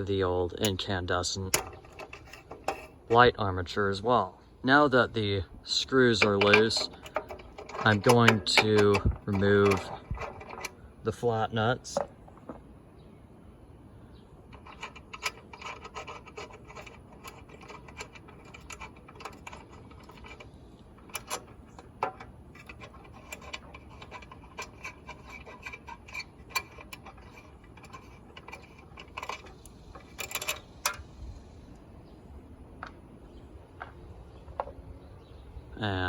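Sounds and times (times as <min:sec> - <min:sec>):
small metallic clicks and scrapes: 0:00.6 - 0:03.3, 0:05.9 - 0:11.3, 0:14.4 - 0:31.9.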